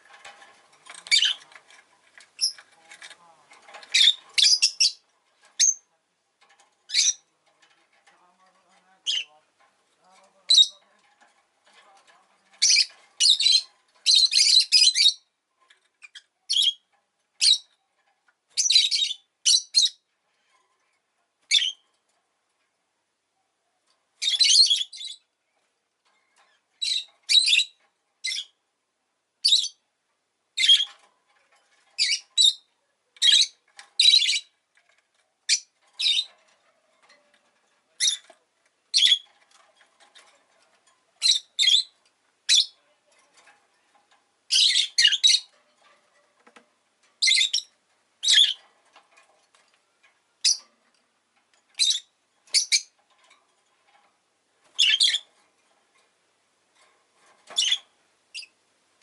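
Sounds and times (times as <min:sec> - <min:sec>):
bird shrill chirps and squawks: 0:01.1 - 0:01.4, 0:03.9 - 0:05.0, 0:06.9 - 0:07.2, 0:10.5 - 0:10.8, 0:12.6 - 0:15.2, 0:24.2 - 0:25.2, 0:26.8 - 0:28.5, 0:32.0 - 0:34.5, 0:35.5 - 0:36.3, 0:38.9 - 0:39.3, 0:41.2 - 0:41.9, 0:42.5 - 0:42.8, 0:44.5 - 0:45.5, 0:47.2 - 0:48.6, 0:50.4 - 0:50.6, 0:51.8 - 0:52.9, 0:54.8 - 0:55.3, 0:57.5 - 0:58.5.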